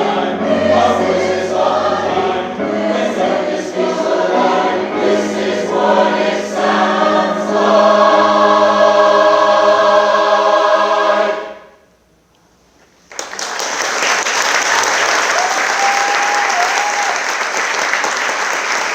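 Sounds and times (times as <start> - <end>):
choir singing held chord: 0.0 - 11.9
audience applause: 13.1 - 18.9.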